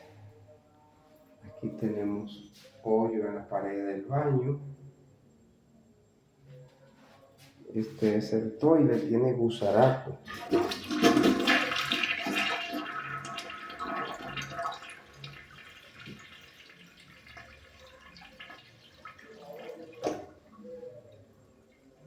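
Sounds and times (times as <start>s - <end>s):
toilet flushing: 10.2s - 20.7s.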